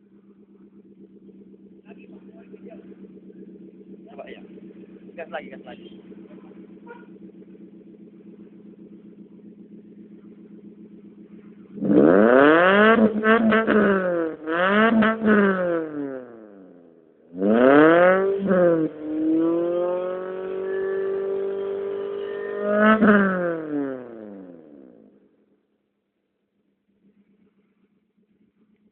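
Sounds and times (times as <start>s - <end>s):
car engine idling and revving: 0.0s - 28.9s.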